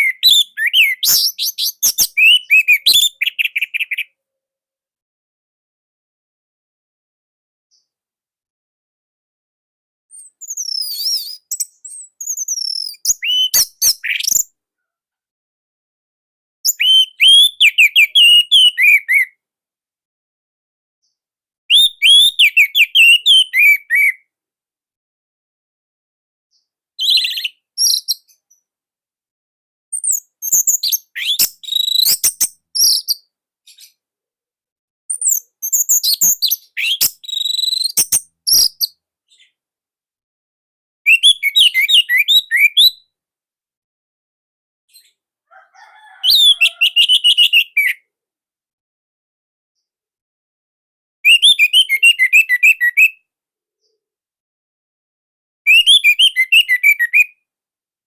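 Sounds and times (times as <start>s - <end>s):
bird singing rapid whistles: 0.0s - 4.1s, 10.2s - 14.5s, 16.7s - 19.3s, 21.7s - 24.2s, 30.0s - 33.2s, 35.1s - 38.9s, 41.1s - 43.0s, 46.1s - 48.0s, 51.3s - 53.2s, 55.7s - 57.3s.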